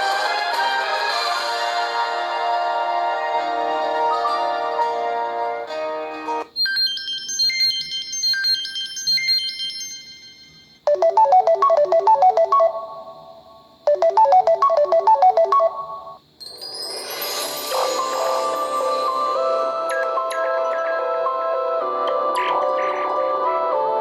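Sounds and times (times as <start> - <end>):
high chiming ringtone melody: 6.8 - 24.0.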